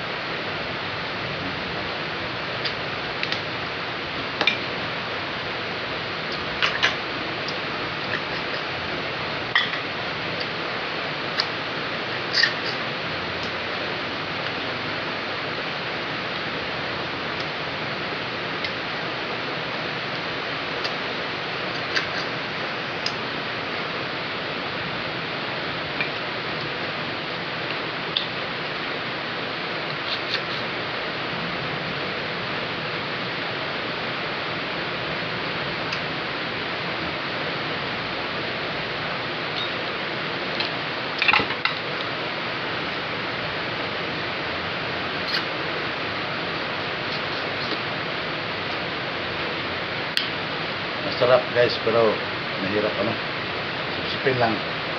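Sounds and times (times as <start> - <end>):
heavy rain: 30.6 - 54.9.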